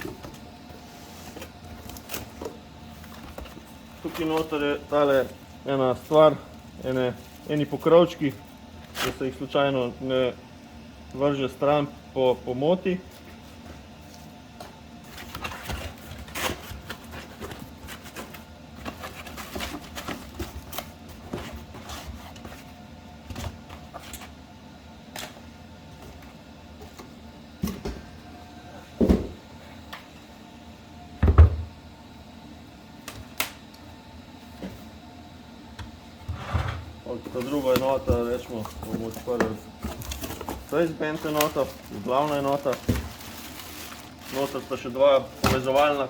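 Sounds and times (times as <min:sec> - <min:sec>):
boxes being handled and opened: 0:00.0 - 0:09.6, 0:13.1 - 0:24.4, 0:36.4 - 0:46.0.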